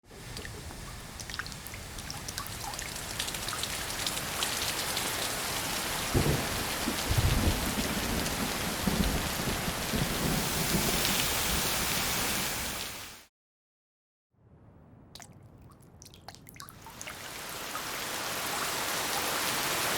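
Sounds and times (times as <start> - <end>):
heavy rain pouring: 0.1 - 13.2, 16.8 - 19.9
thunder rumbling: 5.6 - 12.3.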